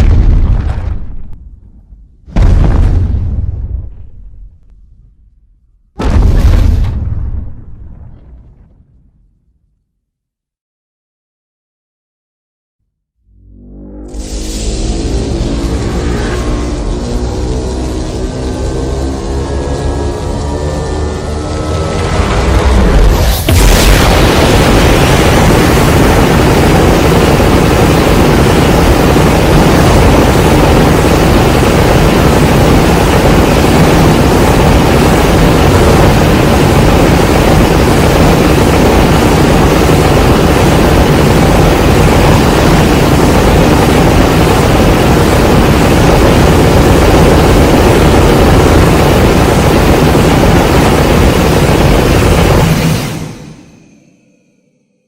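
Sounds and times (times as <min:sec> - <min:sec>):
loud rumbling rush: 0:14.0 - 0:54.6.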